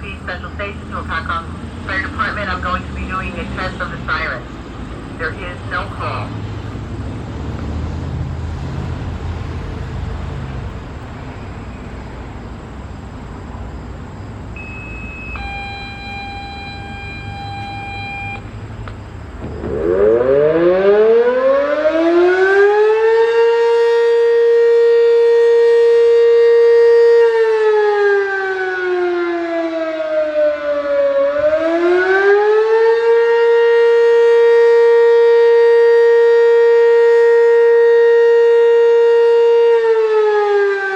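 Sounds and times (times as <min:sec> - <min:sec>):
two-tone paging tones over radio: 0:14.6 - 0:18.4
siren wailing: 0:14.6 - 0:18.6, 0:19.4 - 0:40.9.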